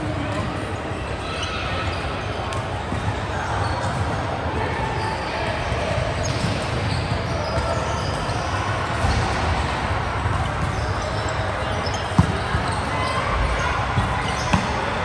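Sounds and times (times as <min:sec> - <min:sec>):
indoor game crowd din: 0:00.0 - 0:15.0
ball hit and bouncing: 0:14.3 - 0:15.0.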